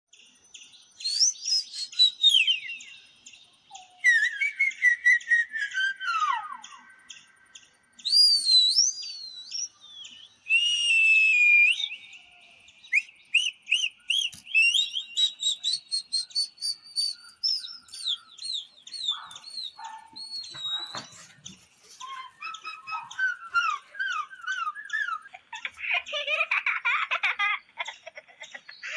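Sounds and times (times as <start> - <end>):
high-pitched whistles and chirps: 1.0 - 3.1, 3.7 - 25.8
quick repeated chirps: 13.0 - 25.3.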